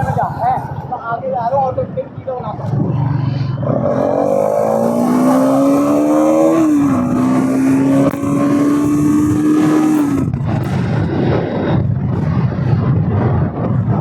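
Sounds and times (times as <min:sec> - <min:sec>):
wind rushing past: 0:00.0 - 0:14.0
motorcycle engine under load: 0:02.6 - 0:11.3.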